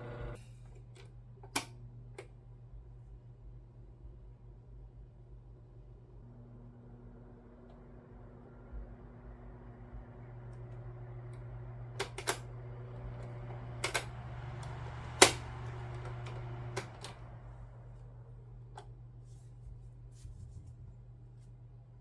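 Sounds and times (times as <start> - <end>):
electric fan humming: 0.0 - 22.0.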